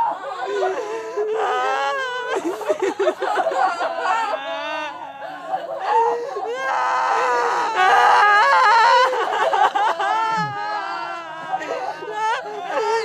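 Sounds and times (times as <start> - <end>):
high-pitched crying: 0.0 - 13.0.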